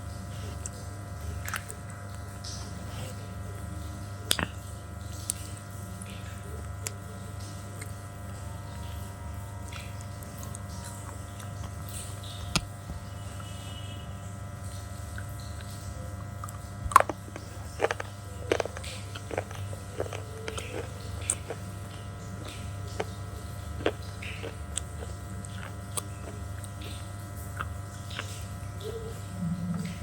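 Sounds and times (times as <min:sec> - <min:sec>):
electrical hum: 0:00.0 - 0:30.0
slate crunching between teeth: 0:04.3 - 0:04.6, 0:16.4 - 0:28.5.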